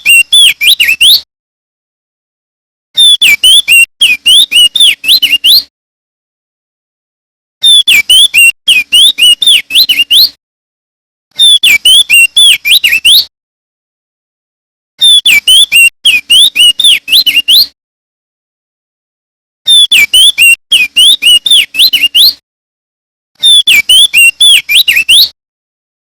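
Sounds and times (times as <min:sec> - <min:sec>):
bird singing whistled notes: 0:00.0 - 0:01.2, 0:03.0 - 0:05.7, 0:07.6 - 0:10.4, 0:11.4 - 0:13.3, 0:15.0 - 0:17.8, 0:19.7 - 0:22.4, 0:23.4 - 0:25.4.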